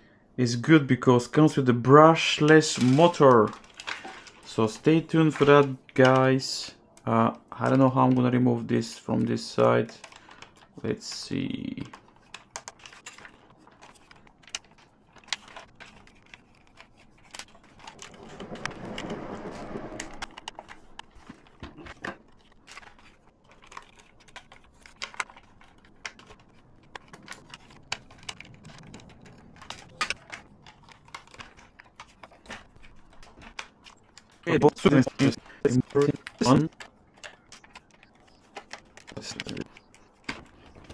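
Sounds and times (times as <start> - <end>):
rubbing noise: 16.0 - 21.5.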